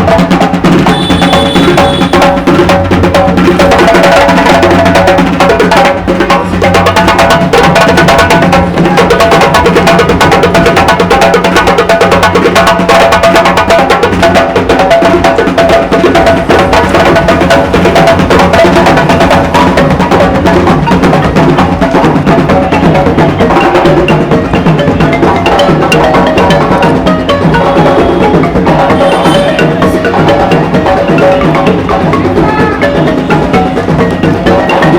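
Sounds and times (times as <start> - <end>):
fast woody percussion clicks: 0.0 - 34.9
held music tones: 12.5 - 34.9.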